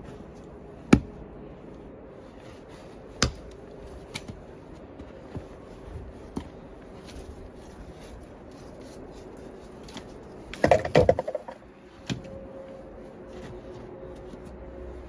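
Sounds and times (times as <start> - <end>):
clicks and knocks: 10.6 - 11.6.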